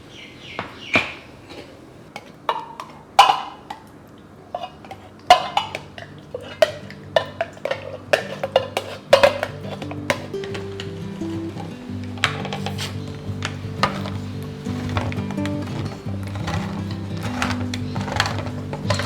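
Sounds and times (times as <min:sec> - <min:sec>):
utensils clinking against dishes: 0:01.5 - 0:19.0
soft background music: 0:06.0 - 0:19.0.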